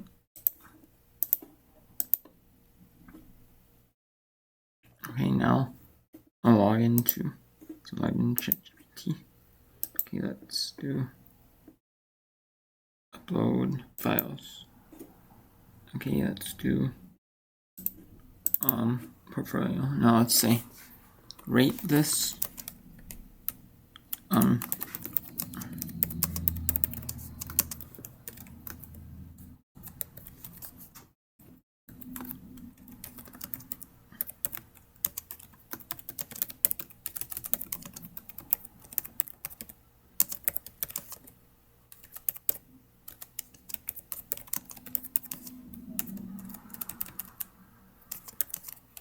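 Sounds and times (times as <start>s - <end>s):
keyboard typing: 17.8s - 18.8s, 21.3s - 29.1s, 29.8s - 30.8s, 31.9s - 49.0s.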